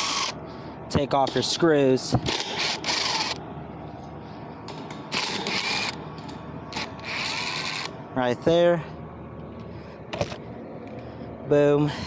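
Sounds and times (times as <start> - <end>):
cordless drill running: 0.0 - 0.4, 2.6 - 3.4, 5.1 - 6.0, 6.8 - 7.9.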